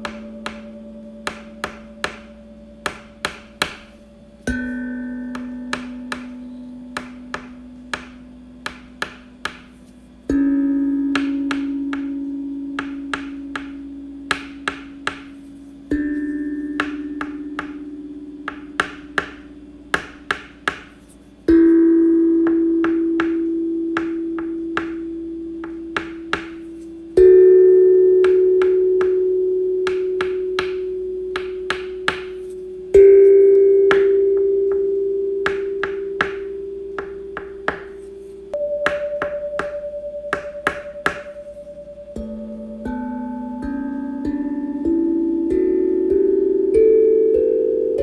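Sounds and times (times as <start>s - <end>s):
bell-like chime tones: 38.0s - 45.3s.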